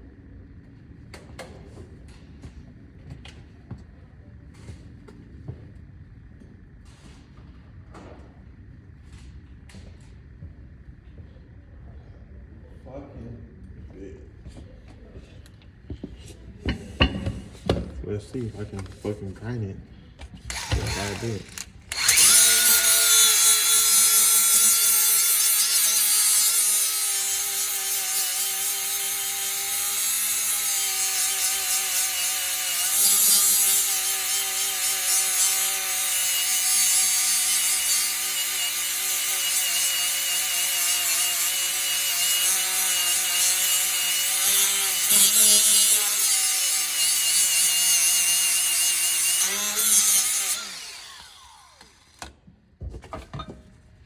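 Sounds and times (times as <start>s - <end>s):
grinder grinding metal: 16.7s - 17.6s, 20.5s - 52.2s
grinder spinning down: 20.5s - 52.2s.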